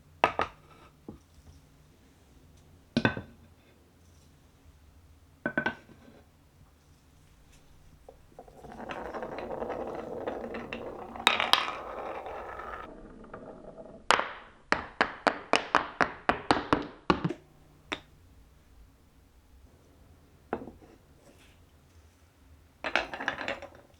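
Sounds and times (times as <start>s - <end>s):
marble rolling on wooden track: 7.2s - 16.8s, 17.4s - 18.8s, 22.8s - 23.9s
sharp clicks of marble dropping: 8.1s - 12.9s.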